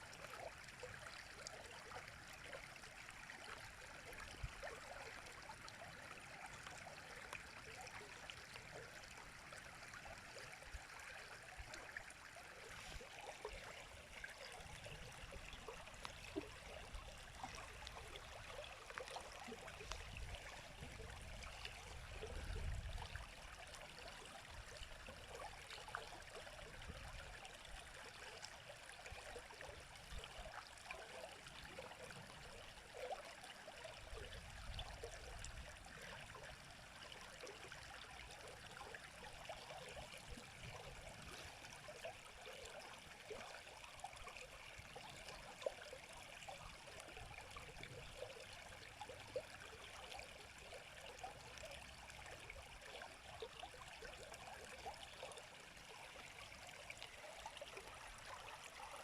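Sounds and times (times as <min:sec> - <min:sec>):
river water babbling over stones: 0:00.0 - 0:59.0.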